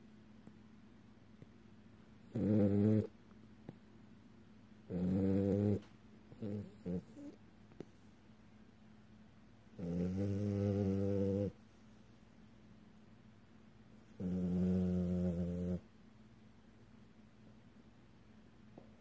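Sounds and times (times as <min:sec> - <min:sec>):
dog snoring: 0:02.3 - 0:03.1, 0:04.9 - 0:07.4, 0:09.7 - 0:11.6, 0:14.1 - 0:15.9.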